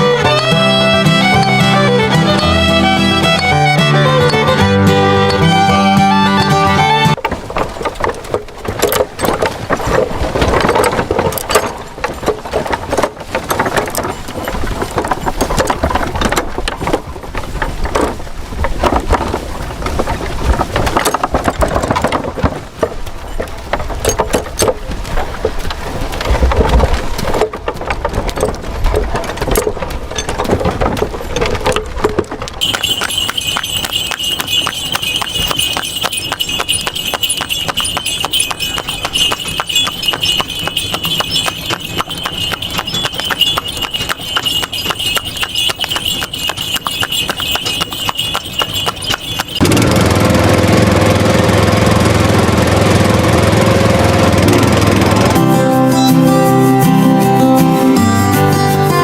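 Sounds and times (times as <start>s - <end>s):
clicking and rattling: 7.2s - 24.8s, 25.6s - 49.8s.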